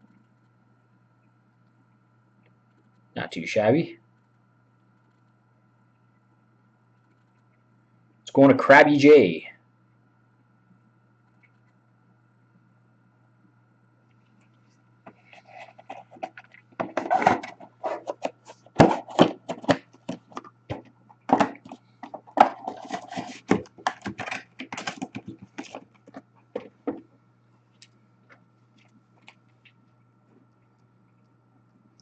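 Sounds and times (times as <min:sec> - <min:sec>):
hands handling cards and packaging: 0:15.1 - 0:27.0.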